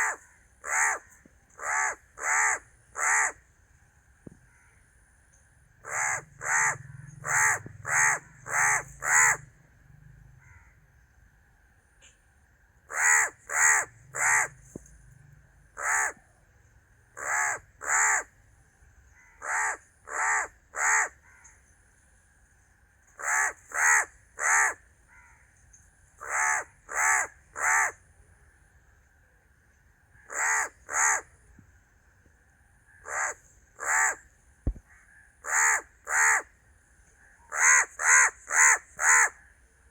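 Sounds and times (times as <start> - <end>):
crow cawing: 0.0 - 3.4, 5.8 - 9.5, 10.4 - 10.8, 12.9 - 14.6, 15.8 - 16.2, 17.2 - 18.3, 19.2 - 21.6, 23.2 - 25.5, 26.2 - 28.0, 30.2 - 31.3, 33.0 - 34.2, 34.9 - 36.5, 37.5 - 39.4.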